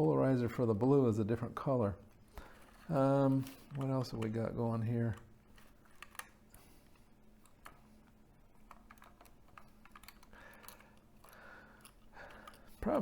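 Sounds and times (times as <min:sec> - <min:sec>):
plastic parts clicking: 0:02.4 - 0:07.8, 0:08.6 - 0:13.0.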